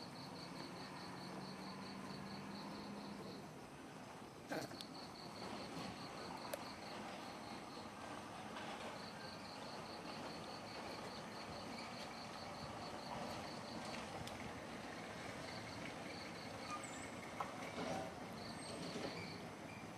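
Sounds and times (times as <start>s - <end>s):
insect chirping trill: 0.0s - 3.6s
faint outdoor background noise: 0.0s - 19.9s.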